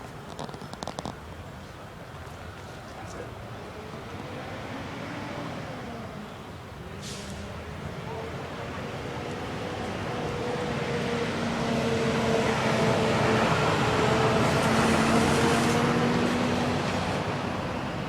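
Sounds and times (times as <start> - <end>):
vehicle passing by: 7.2 - 18.0.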